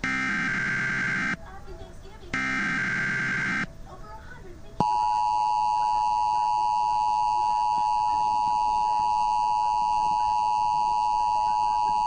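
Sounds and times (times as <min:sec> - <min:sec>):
two-tone alert tone: 0:02.4 - 0:03.7.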